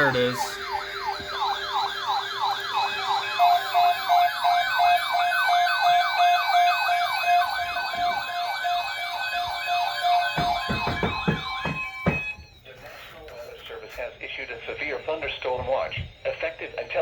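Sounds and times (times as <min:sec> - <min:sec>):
electronic siren yelp: 0:00.0 - 0:12.9.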